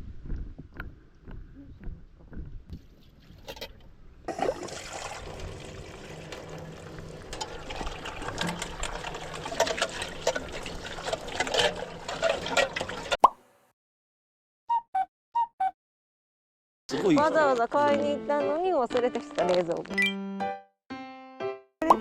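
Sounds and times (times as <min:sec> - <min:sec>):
water pouring and splashing: 0:04.3 - 0:13.2.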